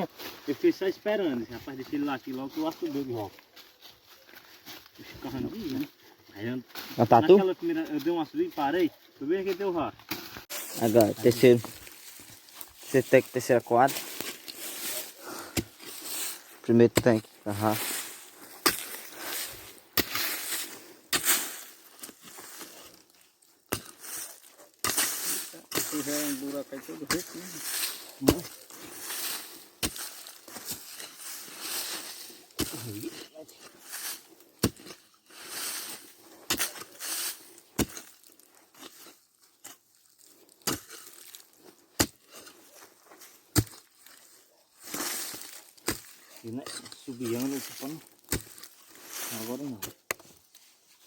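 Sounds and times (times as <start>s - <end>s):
soil scraping rustle: 0.0s - 51.0s
digging strikes into earth: 9.4s - 13.0s, 13.9s - 23.0s, 23.7s - 39.9s, 40.5s - 50.4s.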